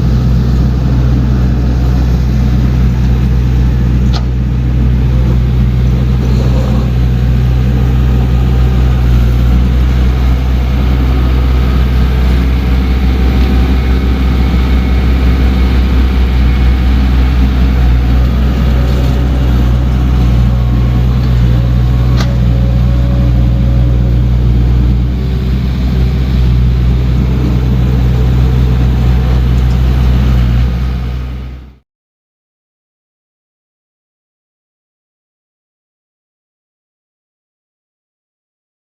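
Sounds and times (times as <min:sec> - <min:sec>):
diesel engine running: 0:00.0 - 0:31.8.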